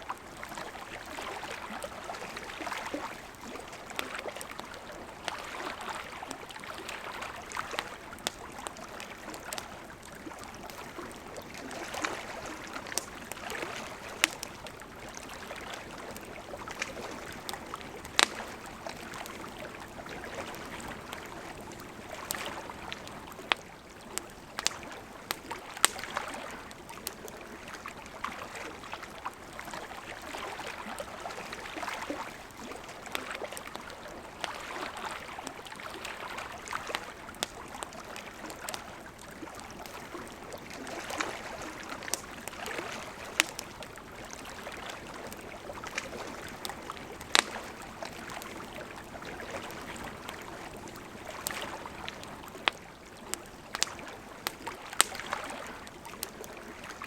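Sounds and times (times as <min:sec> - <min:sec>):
lake waves lapping at shore: 0:00.0 - 0:57.0
campfire popping: 0:00.1 - 0:57.0.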